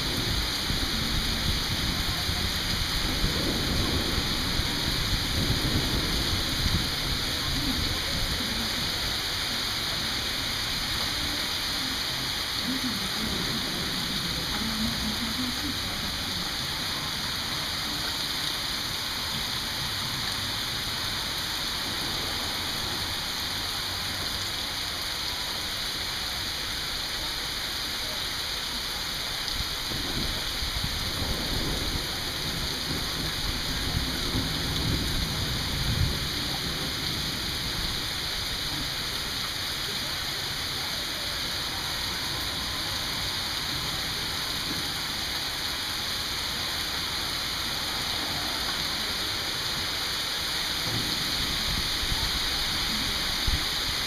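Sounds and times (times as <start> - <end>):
thunder rumbling: 0.0 - 10.9, 29.8 - 39.3, 50.8 - 54.0
steady rain hissing: 0.0 - 54.0.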